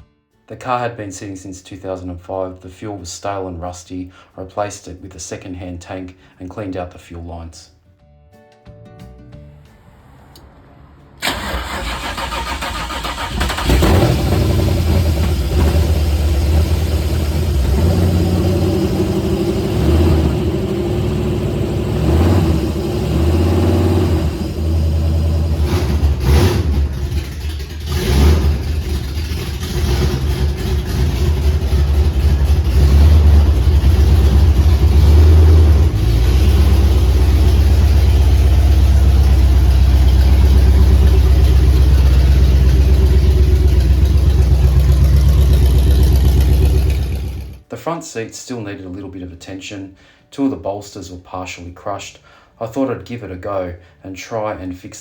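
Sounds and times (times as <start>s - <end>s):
car engine starting and revving: 9.6s - 47.6s.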